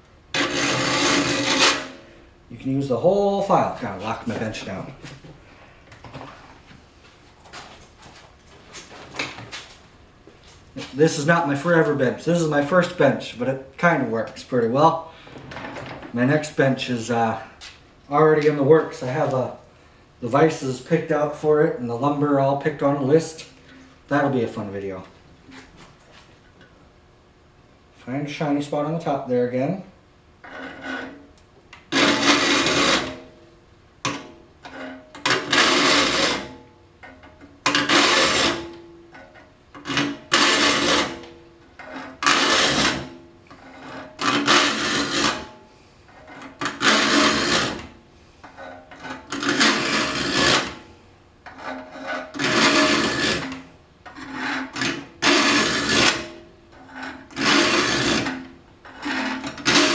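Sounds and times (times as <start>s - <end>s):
file rasping on saw teeth: 0.4s - 2.0s, 31.9s - 33.3s, 35.3s - 36.6s, 37.7s - 38.7s, 39.8s - 41.2s, 41.9s - 45.5s, 46.2s - 47.9s, 49.0s - 50.8s, 51.6s - 59.9s.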